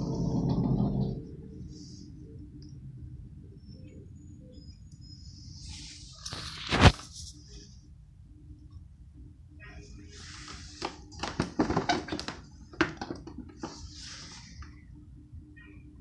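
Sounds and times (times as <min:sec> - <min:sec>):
electric fan humming: 0:05.7 - 0:15.5.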